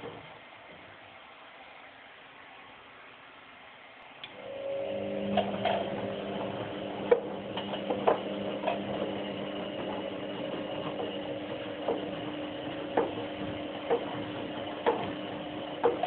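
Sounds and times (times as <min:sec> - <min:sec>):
washing machine hum: 0:04.3 - 0:16.0
sharp clicks and knocks: 0:07.1 - 0:09.1, 0:09.8 - 0:16.0.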